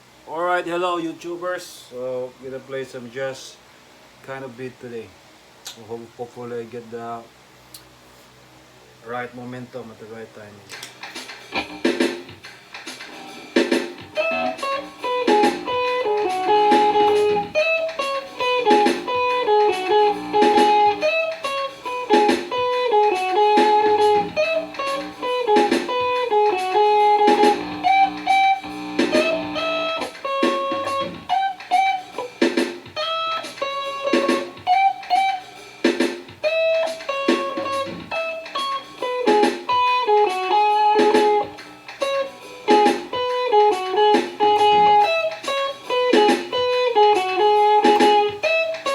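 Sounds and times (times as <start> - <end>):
electric guitar jazz melody: 10.7 - 48.9
steady percussive beat: 10.7 - 48.9.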